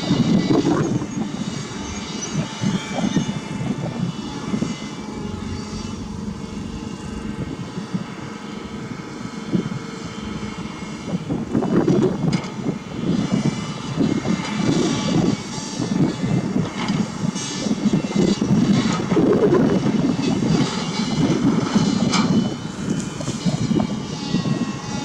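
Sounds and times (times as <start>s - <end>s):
heavy diesel engines running: 0.0s - 13.2s.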